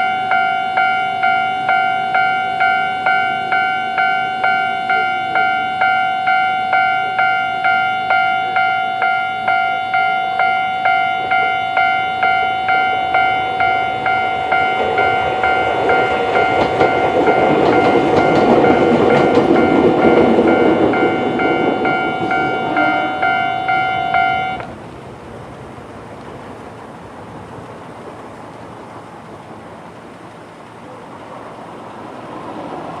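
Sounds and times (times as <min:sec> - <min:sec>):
level-crossing alarm ringing: 0:00.0 - 0:24.7
train rumble: 0:00.0 - 0:33.0.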